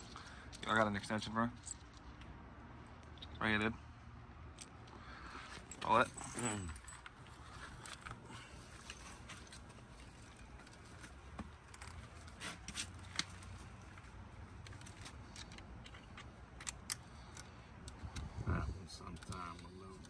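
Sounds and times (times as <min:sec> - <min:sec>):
faint clicks and scrapes of hand work: 0:07.0 - 0:18.4.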